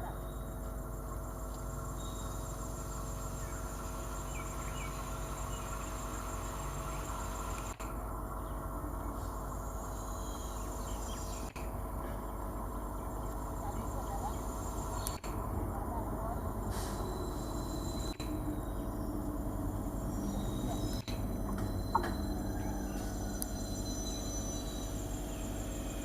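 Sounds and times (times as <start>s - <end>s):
constant low hum: 0.0s - 26.0s
rain hiss: 2.6s - 7.8s.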